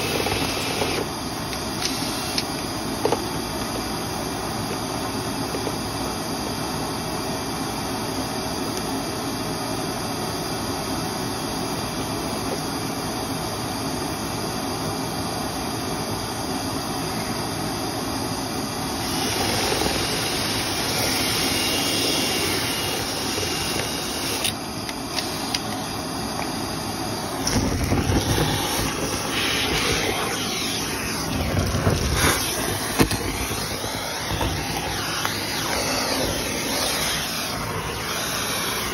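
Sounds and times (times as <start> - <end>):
cleaning machine rushing noise: 0.0 - 1.2, 19.0 - 25.7, 26.6 - 38.9.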